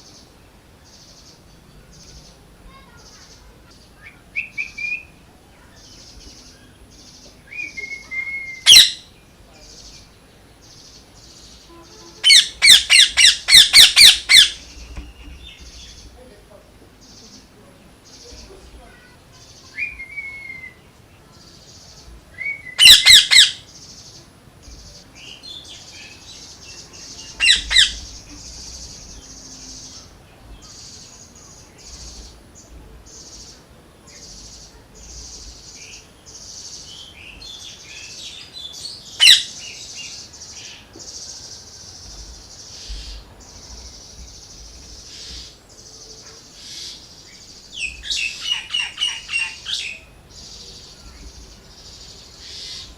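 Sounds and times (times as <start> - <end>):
faint high hiss: 0.0 - 52.9
parrot squawking: 7.5 - 9.1, 12.2 - 14.9, 22.6 - 23.7, 27.2 - 28.2, 39.2 - 39.6, 48.0 - 50.0.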